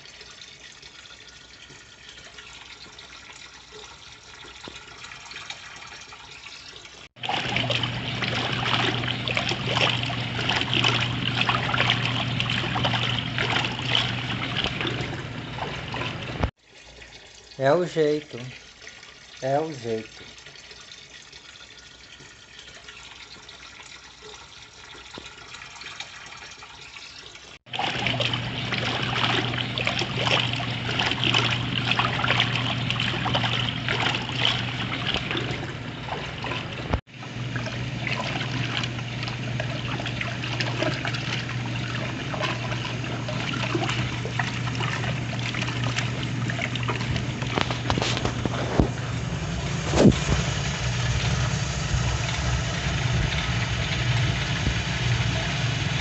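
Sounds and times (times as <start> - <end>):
water sloshing in tub: 0.0 - 56.0
water trickling: 0.0 - 56.0
washing machine motor hum: 7.1 - 16.5, 27.6 - 56.0.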